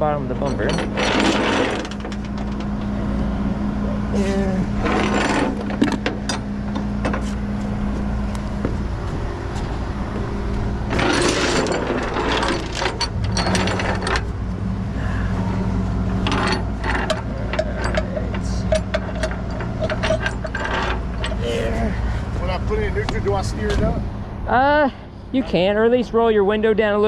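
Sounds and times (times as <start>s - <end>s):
tow chains clinking and rattling: 0.0s - 3.0s, 4.1s - 7.9s, 8.5s - 23.9s
truck engine humming: 0.0s - 27.0s.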